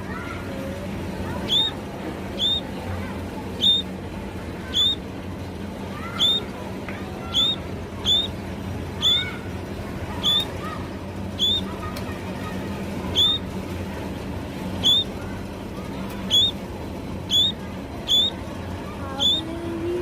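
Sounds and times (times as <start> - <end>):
faint lower bird chirps: 1.4 - 1.8, 2.4 - 2.7, 3.6 - 3.9, 4.7 - 5.0, 6.1 - 6.5, 7.3 - 8.4, 9.0 - 9.4, 10.2 - 10.5, 11.4 - 11.7, 13.1 - 13.4, 14.8 - 15.1, 16.3 - 16.6, 17.2 - 18.4, 19.2 - 19.4
sparrow chirping: 1.4 - 1.8, 2.4 - 2.7, 3.6 - 3.9, 4.7 - 5.0, 6.2 - 6.5, 7.3 - 8.4, 9.0 - 9.3, 10.2 - 10.5, 11.4 - 11.7, 13.1 - 13.4, 14.8 - 15.2, 16.2 - 16.6, 17.2 - 18.4, 19.2 - 19.4.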